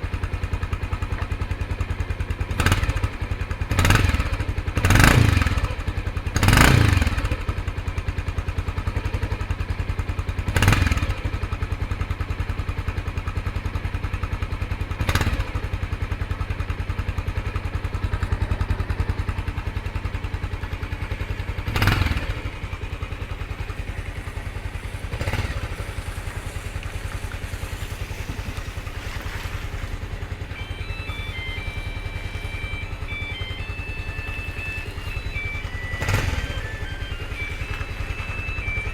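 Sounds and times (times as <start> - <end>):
motorcycle engine idling: 0.0 - 38.9
short throttle blips: 2.5 - 7.8, 15.0 - 38.9.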